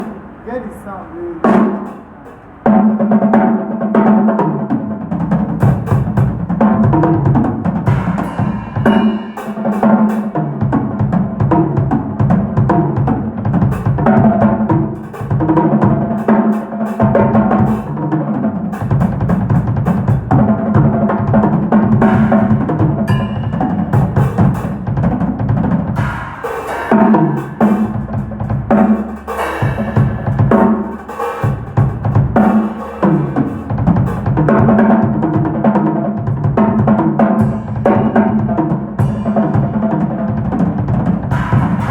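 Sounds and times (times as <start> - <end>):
drum kit playing: 0.0 - 41.9.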